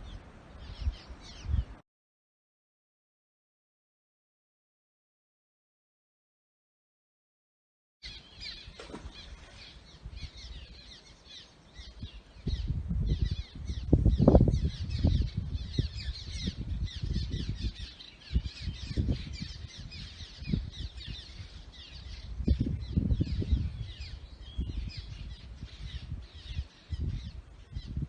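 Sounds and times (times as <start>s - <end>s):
birds chirping: 0.0s - 1.8s, 8.0s - 28.0s
low rumbling wind gusts: 0.0s - 1.8s, 8.0s - 28.0s.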